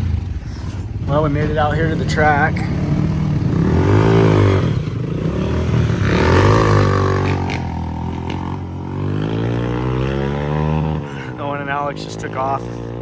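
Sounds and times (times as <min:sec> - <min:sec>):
dirt bike engine revving: 0:00.0 - 0:13.0.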